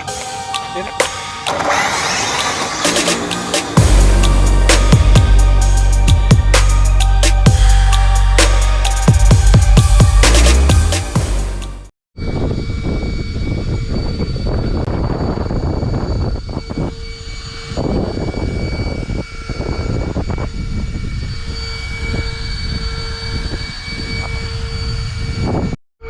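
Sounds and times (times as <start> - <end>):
electric motor whining: 0.0 - 8.3, 12.2 - 25.8
rushing wind: 12.2 - 25.8.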